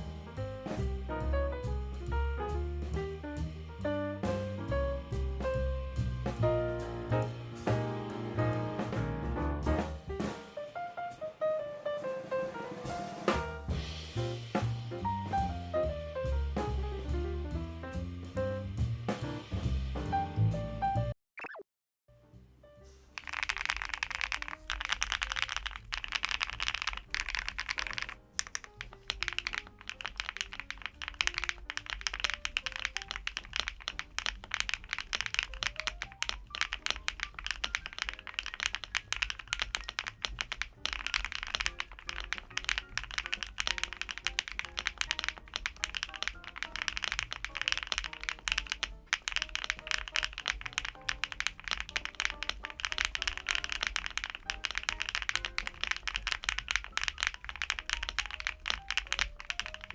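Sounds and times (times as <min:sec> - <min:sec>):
fast typing on mechanical keyboard: 0:23.2 - 0:59.9.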